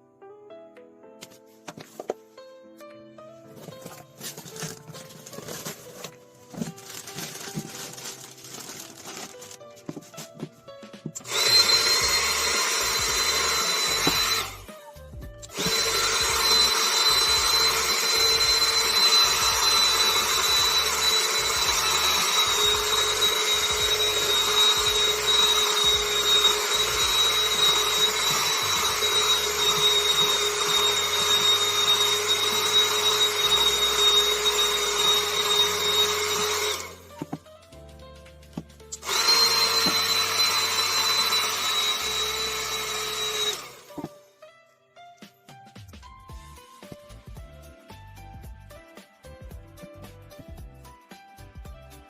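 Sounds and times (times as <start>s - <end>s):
mini vacuum motor whining: 11.2s - 14.8s, 15.4s - 37.4s, 39.0s - 44.1s.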